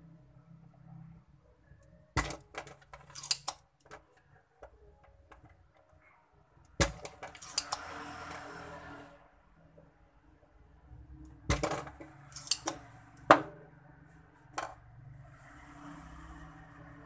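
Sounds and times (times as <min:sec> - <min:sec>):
metal tools clinking: 0:02.3 - 0:04.2, 0:06.9 - 0:07.8, 0:11.5 - 0:12.8.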